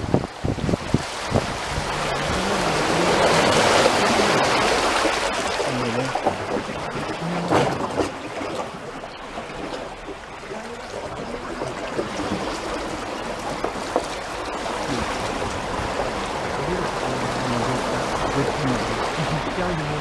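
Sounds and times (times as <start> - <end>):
water rushing: 0.0 - 20.0.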